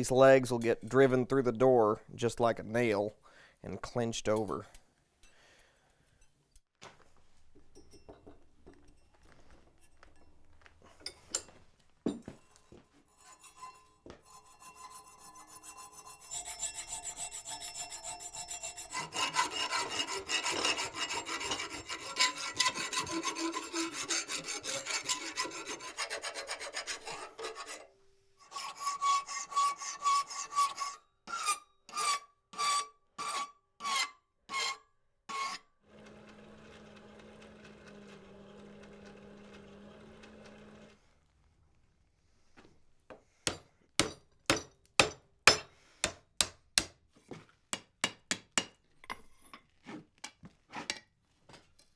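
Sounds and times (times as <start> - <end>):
rasp scraping over iron: 12.4 - 35.6
ringing squeal of rasp strokes: 13.1 - 23.9.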